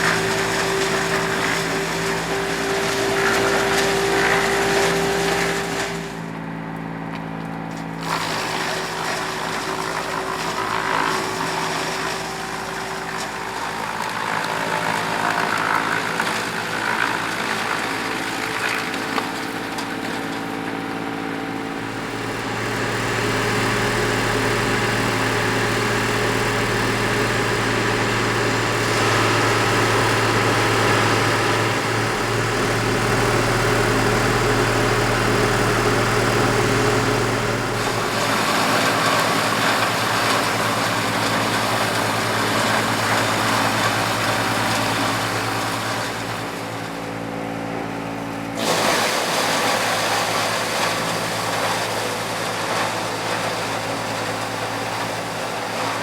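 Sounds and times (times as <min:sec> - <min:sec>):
steady mechanical hum: 0:00.0 - 0:56.0.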